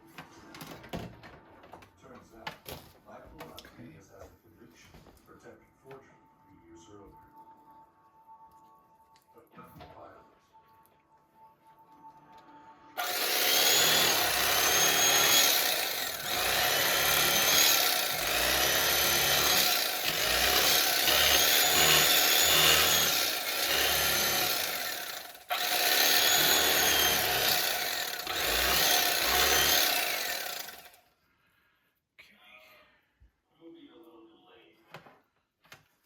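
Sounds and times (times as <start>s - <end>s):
electric power tool whining: 13.0s - 31.0s.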